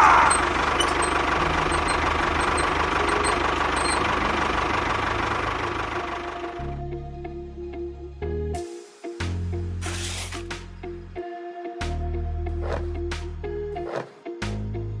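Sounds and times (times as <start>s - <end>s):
small engine running: 0.0s - 6.8s.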